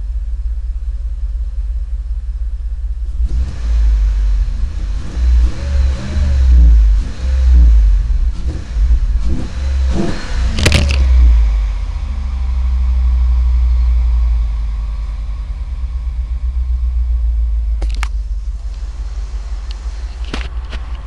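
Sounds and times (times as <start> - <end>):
car engine running unevenly: 0.0 - 21.0
sharp click: 10.5 - 11.1.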